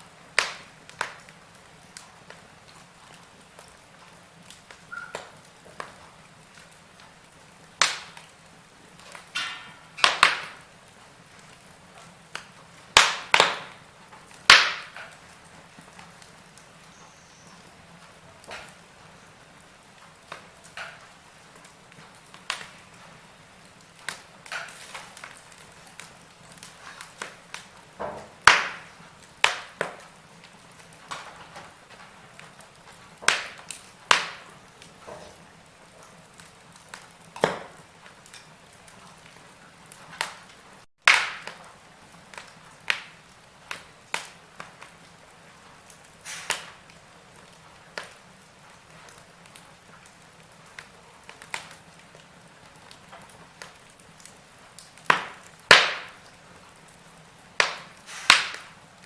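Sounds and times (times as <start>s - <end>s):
wood fire crackling: 0.0s - 59.0s
faint hiss: 45.8s - 46.9s, 56.1s - 59.0s.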